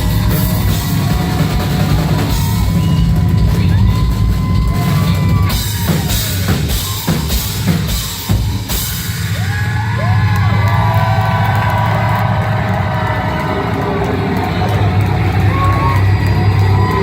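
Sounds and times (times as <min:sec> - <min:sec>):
drum kit strokes: 0:00.0 - 0:10.2
electric bass playing heavy notes: 0:00.0 - 0:17.0.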